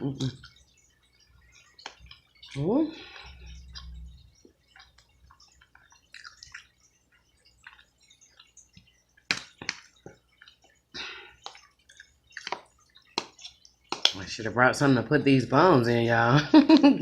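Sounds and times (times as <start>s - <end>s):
chewing and lip-smacking: 0.1s - 14.4s
wet mouth clicks: 1.6s - 14.3s.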